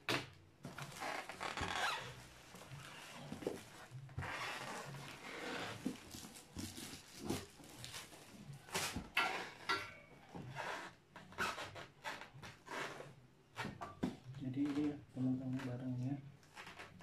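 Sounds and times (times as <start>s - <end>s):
cardboard rustling and scraping: 0.7s - 9.6s.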